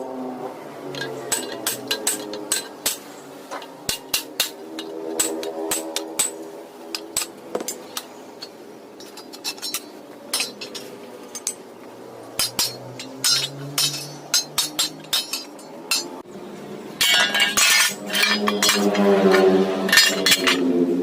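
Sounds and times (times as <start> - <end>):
hammer striking sheet metal: 1.3 - 3.1.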